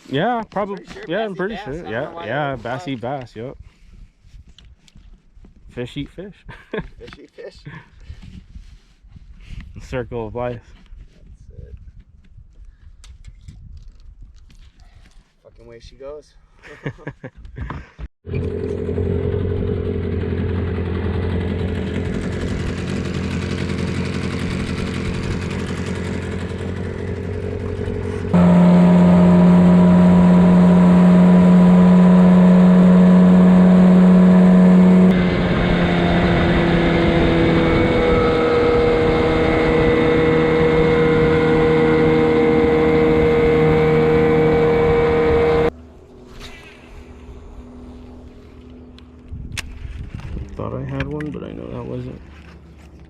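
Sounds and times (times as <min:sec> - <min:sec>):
boat motor running: 0:18.3 - 0:45.8.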